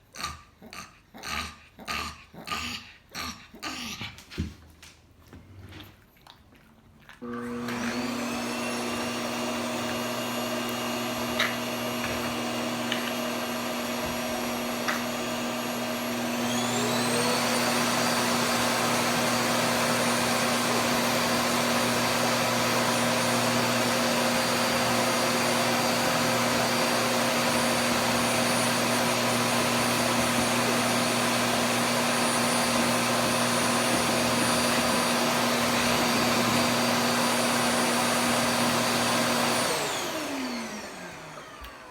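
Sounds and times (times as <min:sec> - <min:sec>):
dog panting: 0:00.1 - 0:04.8
vacuum cleaner humming: 0:07.2 - 0:41.9.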